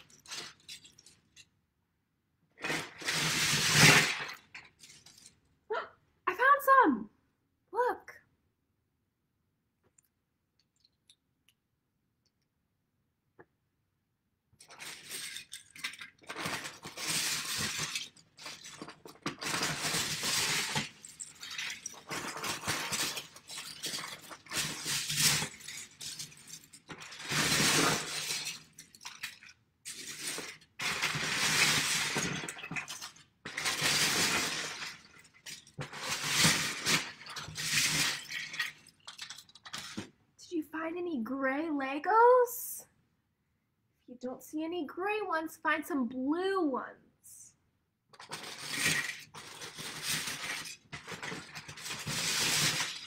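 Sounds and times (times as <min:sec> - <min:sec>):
plastic bricks clattering: 0:00.0 - 0:01.6, 0:02.6 - 0:05.5, 0:14.6 - 0:40.1, 0:48.1 - 0:53.0.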